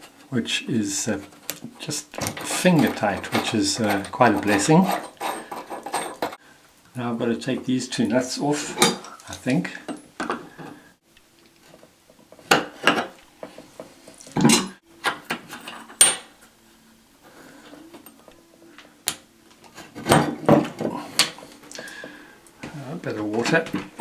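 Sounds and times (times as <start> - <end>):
metal fittings clinking and scraping: 0.9 - 6.4.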